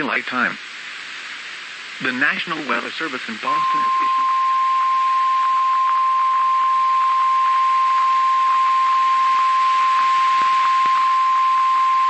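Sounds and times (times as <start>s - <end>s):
hissy radio static with crackles: 0.0s - 12.0s
steady alarm tone: 3.5s - 12.0s.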